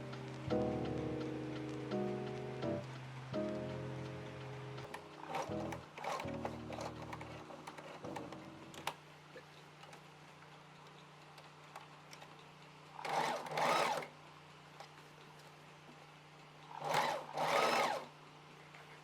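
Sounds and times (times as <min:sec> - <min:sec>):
background music with light clicks: 0:00.0 - 0:14.1
sewing machine stitching: 0:04.8 - 0:09.0, 0:13.0 - 0:14.2, 0:16.7 - 0:18.2.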